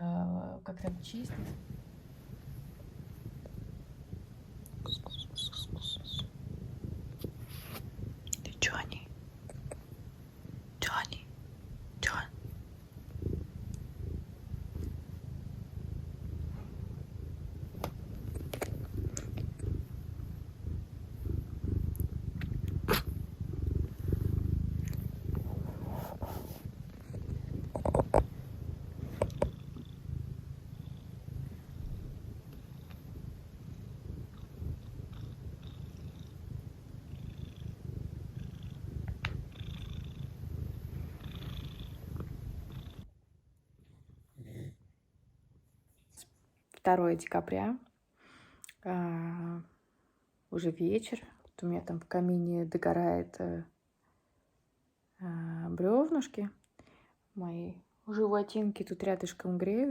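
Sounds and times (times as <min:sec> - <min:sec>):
cat purring: 0:00.0 - 0:47.6.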